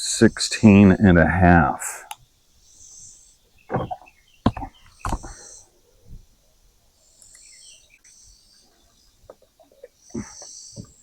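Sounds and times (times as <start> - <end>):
sharp knocks: 3.7 - 5.4.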